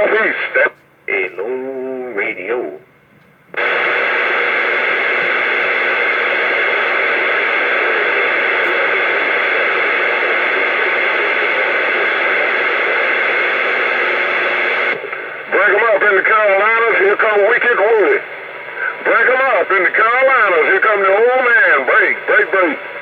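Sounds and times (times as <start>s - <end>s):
radio static hiss: 0.0s - 23.0s.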